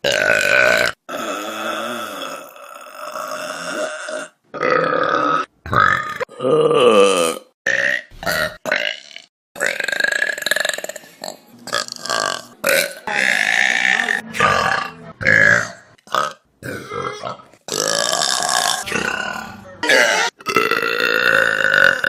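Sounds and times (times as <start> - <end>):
person burping: 0.0 - 22.0.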